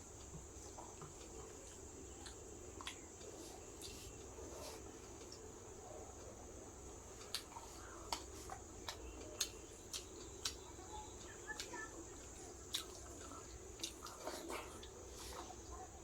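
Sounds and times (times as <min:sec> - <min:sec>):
chewing with wet mouth clicks: 0:00.2 - 0:04.3, 0:07.2 - 0:15.6.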